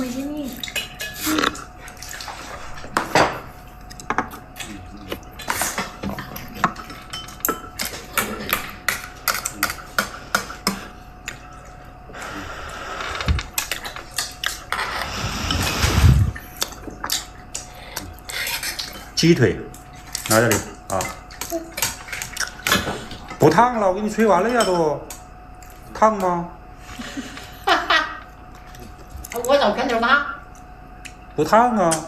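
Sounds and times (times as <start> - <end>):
tableware clinking against bowls: 6.2 - 10.9, 24.4 - 25.2.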